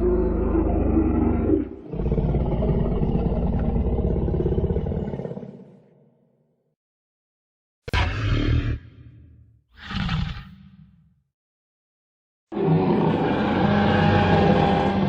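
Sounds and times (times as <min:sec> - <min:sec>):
deep rough dinosaur roar: 0:00.0 - 0:05.8, 0:09.8 - 0:10.8, 0:12.5 - 0:15.0.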